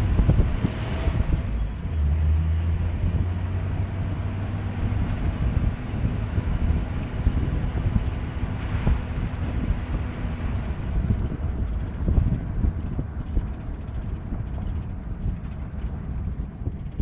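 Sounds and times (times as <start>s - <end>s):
car engine running: 0.0s - 17.0s
road rumble: 0.0s - 17.0s
wind buffeting the microphone: 0.0s - 17.0s.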